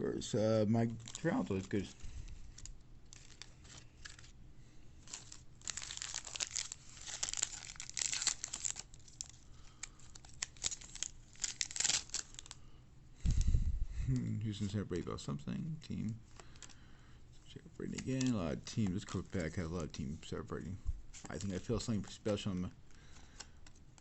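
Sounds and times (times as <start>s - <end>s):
wrapper tearing and crinkling: 0.9s - 4.3s, 5.0s - 12.6s.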